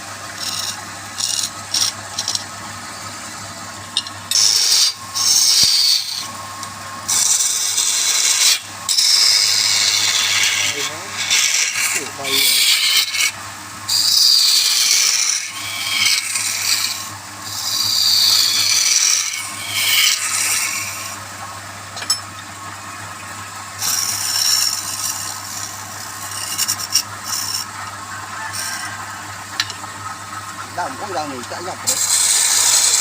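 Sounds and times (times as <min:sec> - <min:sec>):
tool scraping spinning wood: 0:00.0 - 0:03.2, 0:03.8 - 0:22.2, 0:23.8 - 0:33.0
lathe motor hum: 0:00.0 - 0:22.2, 0:23.8 - 0:33.0.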